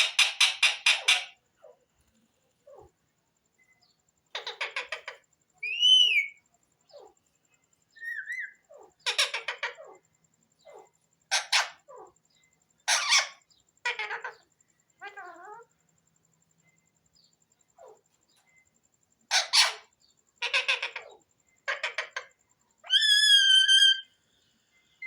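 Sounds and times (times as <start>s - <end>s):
parrot squawking: 0.0s - 1.4s, 4.4s - 7.1s, 8.0s - 10.0s, 10.7s - 12.1s, 12.9s - 15.6s, 19.3s - 24.1s
parrot warbling call: 12.9s - 15.7s, 19.3s - 24.1s.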